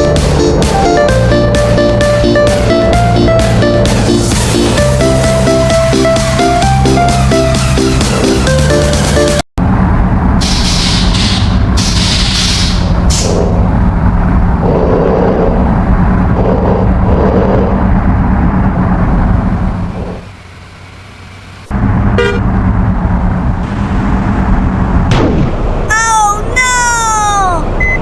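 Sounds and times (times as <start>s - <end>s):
bus engine running: 0.0s - 28.0s
horn toots: 22.1s - 22.5s.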